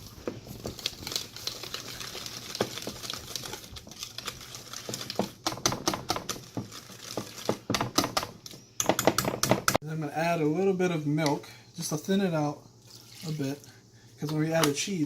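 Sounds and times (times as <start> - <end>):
utensil beating mix in bowl: 0.0 - 9.8.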